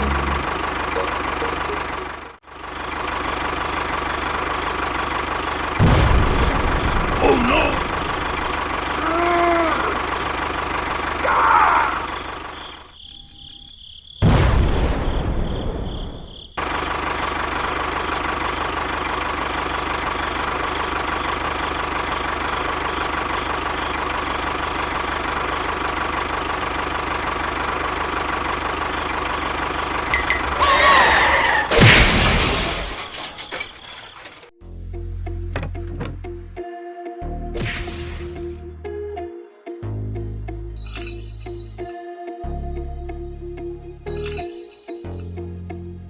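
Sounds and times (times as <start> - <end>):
mechanical engine-like drone: 0.0 - 13.0, 16.6 - 34.0
loud noisy burst: 5.8 - 12.4.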